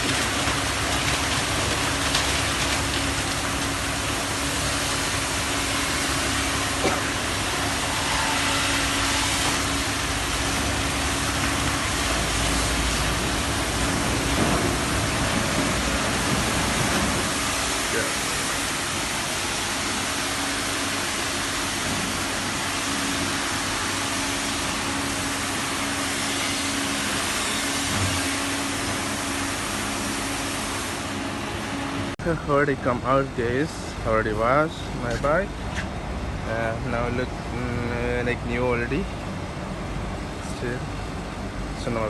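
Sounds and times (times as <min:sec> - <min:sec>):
machine hum: 0:00.0 - 0:42.0
washing station hiss: 0:04.1 - 0:31.7.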